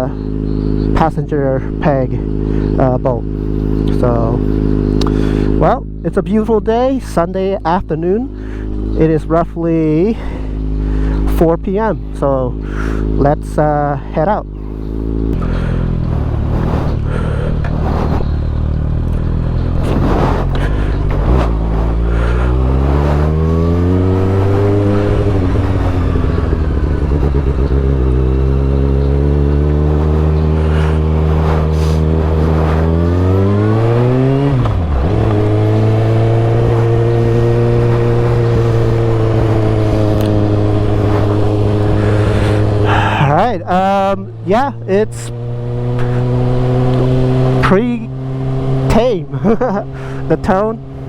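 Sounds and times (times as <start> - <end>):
motorcycle engine accelerating: 0.0 - 51.0.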